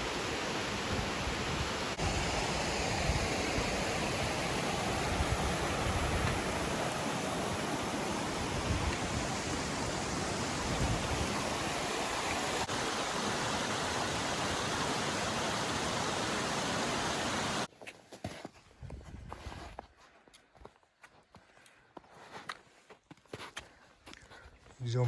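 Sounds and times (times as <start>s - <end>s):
waterfall rushing: 0.0s - 17.7s.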